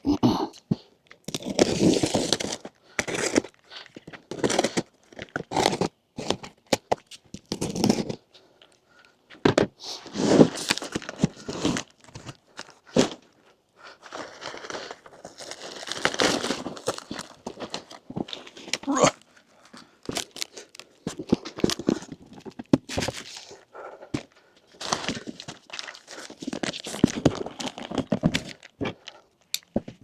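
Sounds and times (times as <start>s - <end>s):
cardboard tearing: 1.4s - 3.6s, 14.2s - 19.2s, 20.1s - 23.5s
packing material crinkling: 13.8s - 23.6s, 24.7s - 30.0s.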